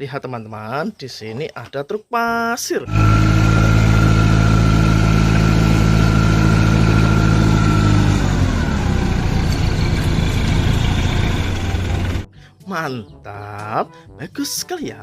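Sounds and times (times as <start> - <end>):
truck engine idling: 2.9 - 12.3.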